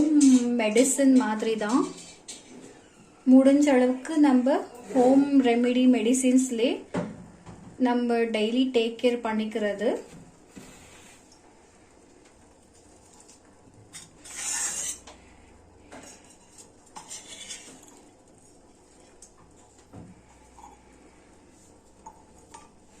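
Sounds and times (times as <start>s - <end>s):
spoon scraping cooking pot: 13.2s - 15.2s, 16.0s - 18.2s.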